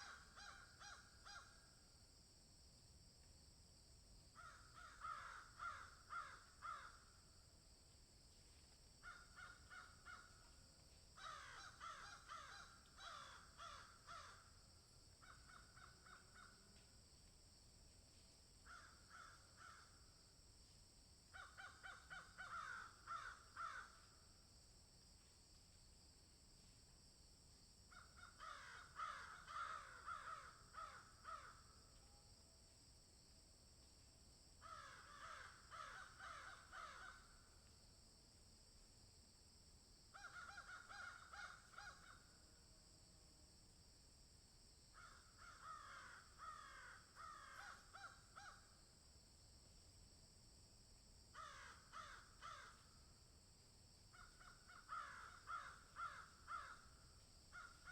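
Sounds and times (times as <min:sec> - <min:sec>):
crows cawing: 0:00.0 - 0:01.6, 0:04.4 - 0:07.1, 0:09.0 - 0:10.4, 0:11.2 - 0:14.5, 0:15.2 - 0:16.6, 0:18.6 - 0:19.9, 0:21.4 - 0:24.0, 0:27.9 - 0:31.7, 0:34.6 - 0:37.3, 0:40.2 - 0:42.2, 0:45.0 - 0:48.6, 0:51.4 - 0:52.9, 0:54.1 - 0:56.9, 0:57.5 - 0:57.9.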